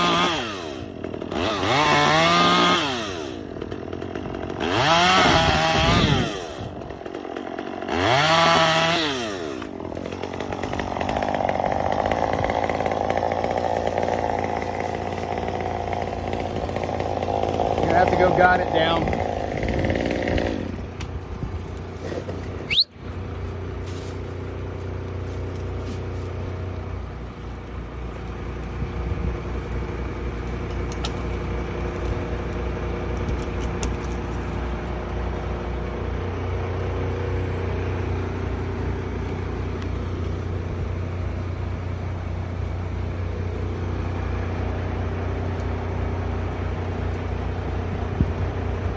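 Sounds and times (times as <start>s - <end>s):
crane engine droning: 0.0s - 48.9s
short rising squeal: 22.6s - 23.0s.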